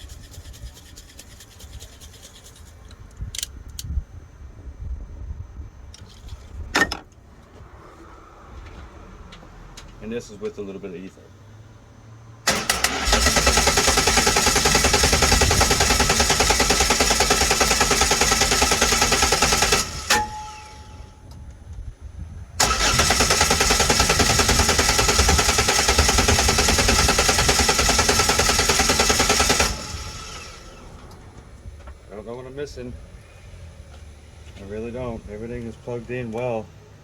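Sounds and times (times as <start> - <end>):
car engine cranking: 12.4 - 21.8, 22.6 - 36.7.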